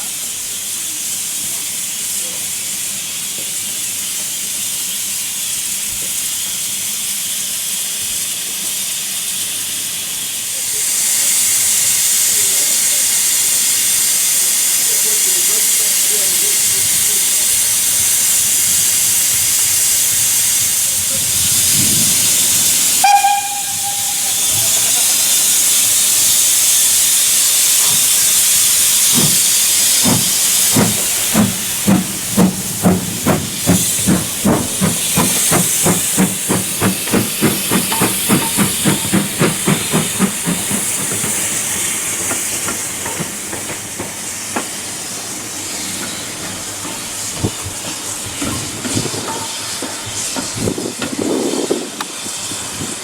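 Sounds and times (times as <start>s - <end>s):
steam hissing: 0.0s - 53.0s
locomotive exhaust beats: 20.9s - 26.9s, 27.6s - 44.2s
steam whistle blast: 22.9s - 25.0s.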